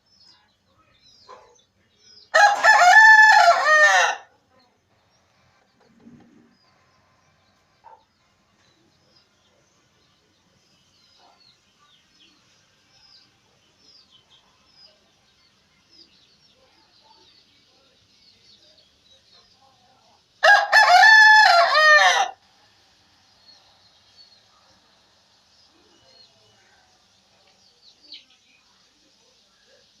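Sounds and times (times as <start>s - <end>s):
faint bird chirping: 0.0s - 2.4s, 4.5s - 20.3s, 22.5s - 30.0s
rooster crowing: 2.3s - 4.3s, 20.4s - 22.4s.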